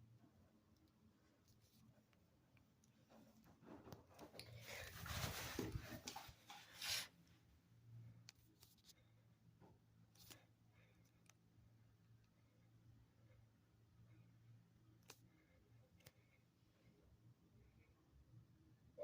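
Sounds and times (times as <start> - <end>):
low steady hum: 0.0 - 19.0
rustling and rubbing: 3.0 - 7.2.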